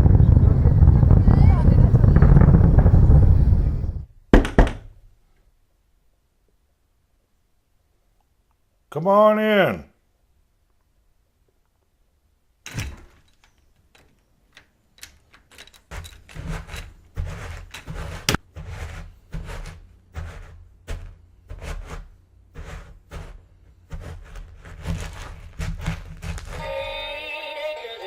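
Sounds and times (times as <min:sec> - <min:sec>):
sharp clicks and knocks: 0:12.7 - 0:18.4.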